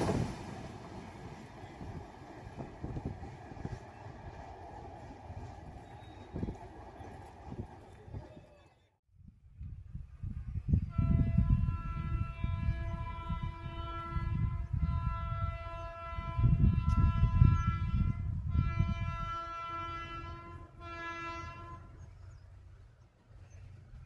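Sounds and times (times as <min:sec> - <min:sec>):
train rumbling on track: 0:00.0 - 0:08.7
locomotive horn blasts: 0:10.8 - 0:22.1.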